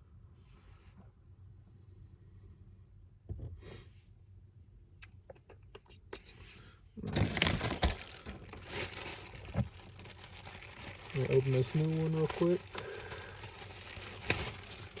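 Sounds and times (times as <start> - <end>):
packaging crinkling and rustling: 7.0 - 15.0.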